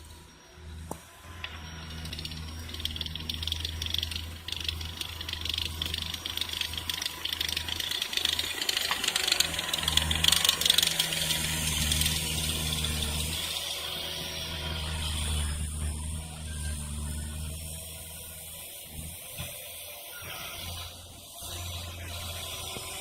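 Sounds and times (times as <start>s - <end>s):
diesel engine running: 1.0s - 19.4s
metallic rattle and clatter: 1.8s - 13.4s.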